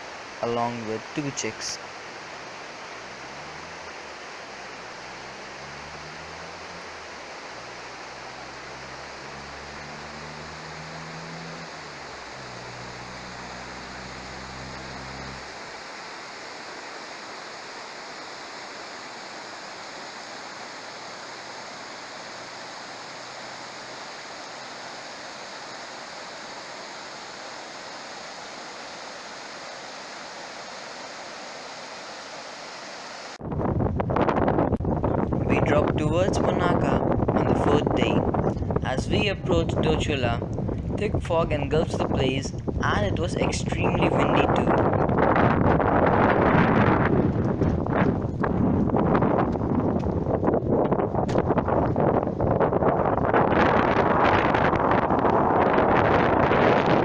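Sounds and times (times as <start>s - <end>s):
fast-flowing river rushing: 1.4s - 33.4s
low hum with shifting pitch: 2.4s - 16.0s.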